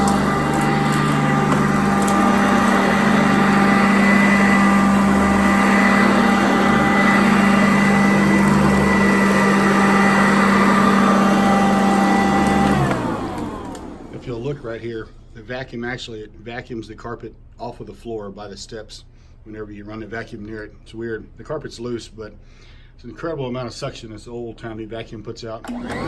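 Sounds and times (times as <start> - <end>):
vacuum cleaner motor whine: 0.0 - 14.8, 25.6 - 26.0
vacuum motor winding down: 0.0 - 14.8, 25.6 - 26.0.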